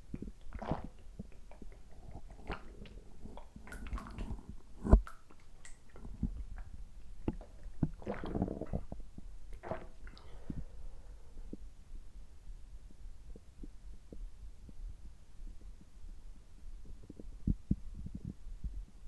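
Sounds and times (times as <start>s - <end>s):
stomach gurgling: 0.0s - 11.7s, 16.8s - 18.9s.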